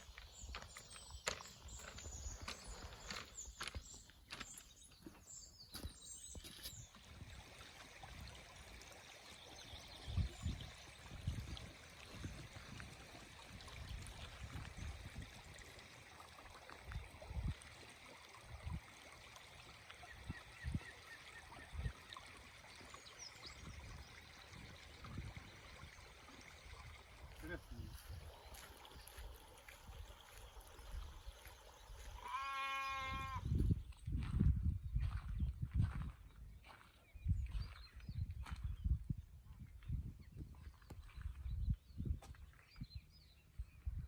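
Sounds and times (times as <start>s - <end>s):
stream trickling: 0.0s - 39.0s
wind buffeting microphone: 9.8s - 15.6s, 16.9s - 17.7s, 23.4s - 26.1s, 32.9s - 44.0s.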